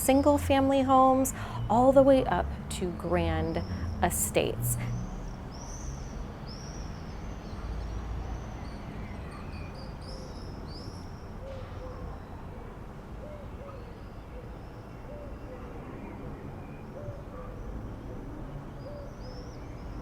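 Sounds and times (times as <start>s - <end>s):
songbirds chirping: 0.0s - 20.0s
bird cooing: 11.4s - 12.6s, 13.2s - 15.7s, 17.0s - 17.6s.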